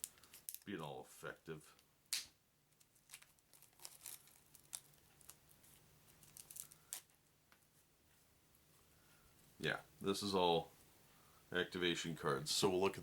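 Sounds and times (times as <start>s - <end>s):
cellophane crinkling: 2.8s - 7.2s.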